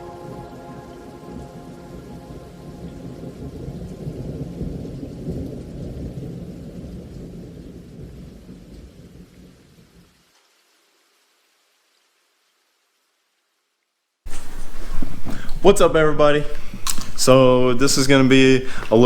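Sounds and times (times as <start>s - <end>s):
rolling thunder: 0.0s - 9.6s
steady rain: 0.0s - 19.0s.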